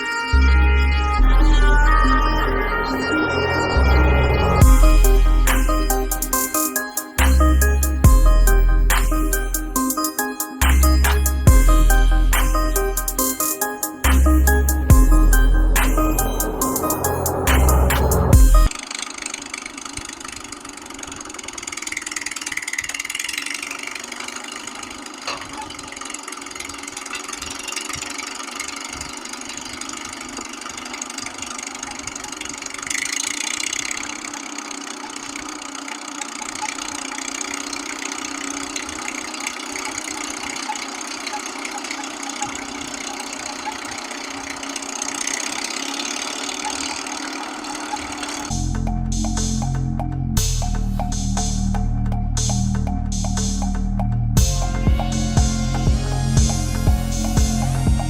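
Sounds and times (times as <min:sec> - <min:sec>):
engine idling: 0:14.0 - 0:58.0.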